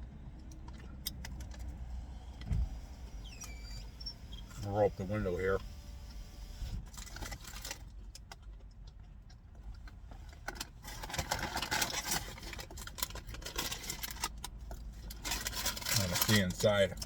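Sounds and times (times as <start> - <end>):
packaging rustling and crinkling: 10.3 - 17.0.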